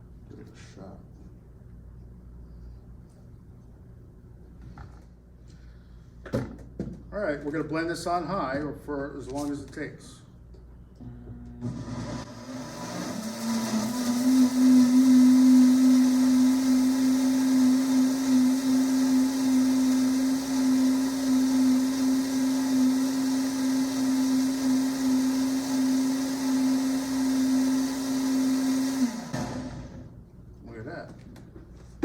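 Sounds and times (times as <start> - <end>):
blender motor whirring: 11.5 - 30.2.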